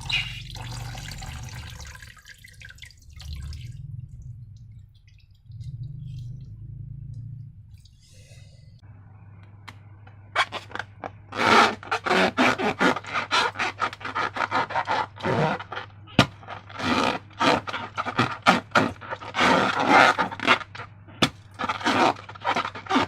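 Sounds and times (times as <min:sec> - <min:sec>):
faint low hum: 0:00.0 - 0:11.9
slime squishing and scraping: 0:10.4 - 0:23.0.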